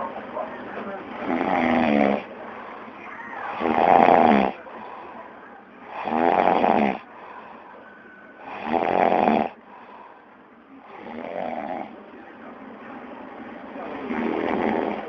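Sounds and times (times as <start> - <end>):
man snoring: 1.2 - 2.3, 3.4 - 4.9, 5.9 - 7.5, 8.4 - 10.0, 10.8 - 12.0, 14.0 - 15.0.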